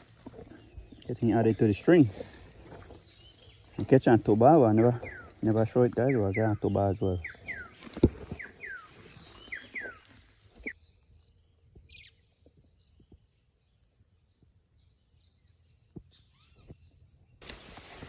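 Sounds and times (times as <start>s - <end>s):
bird whistled calls: 7.2s - 10.0s.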